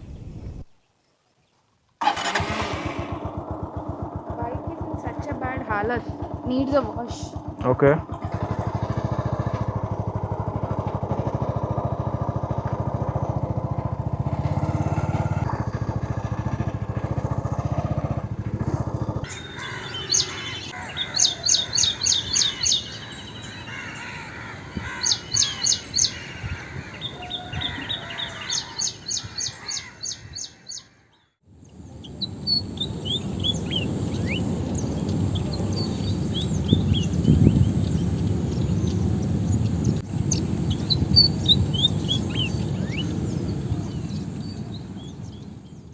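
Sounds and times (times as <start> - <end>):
motorcycle engine idling: 2.0 - 30.8, 31.5 - 45.9
high rapid bird calls: 19.2 - 45.9
low rumble: 31.6 - 45.9.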